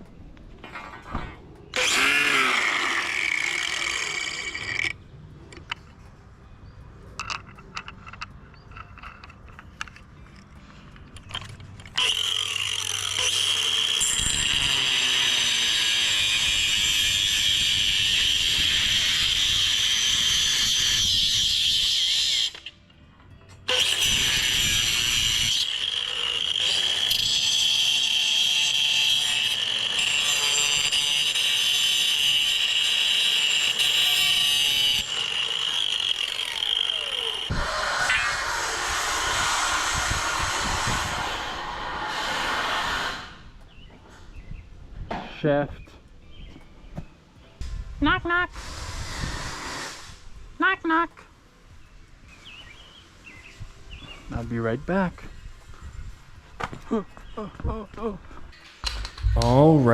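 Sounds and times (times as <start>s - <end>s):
power tool running: 1.7s - 5.0s, 12.0s - 21.7s, 23.7s - 43.4s
clicks and knocks: 58.6s - 59.6s.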